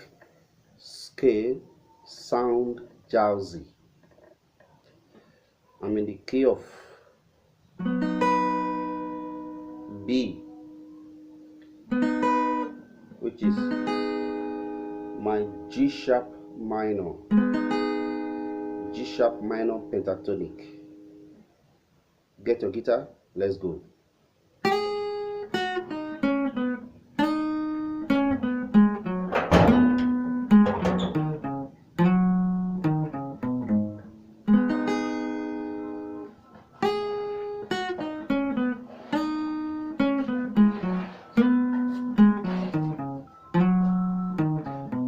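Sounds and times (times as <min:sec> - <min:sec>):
guitar single-note runs: 0:07.8 - 0:21.3, 0:26.0 - 0:36.3, 0:39.5 - 0:45.0
strummed guitar chord: 0:24.8 - 0:45.0.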